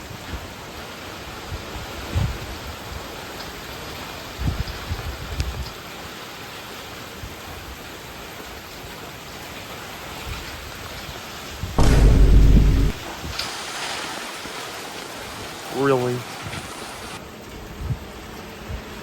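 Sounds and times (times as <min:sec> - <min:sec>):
loud low rumbling blast: 0:11.8 - 0:13.0
heavy rain: 0:11.8 - 0:17.4.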